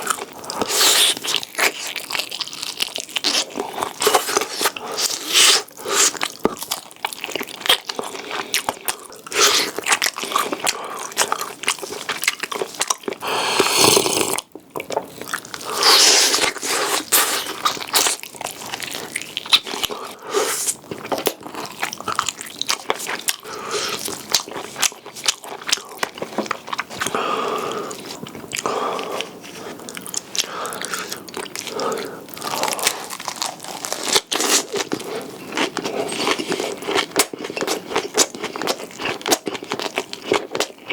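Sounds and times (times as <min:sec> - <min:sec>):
person chewing crunchy food: 0:00.0 - 0:40.9.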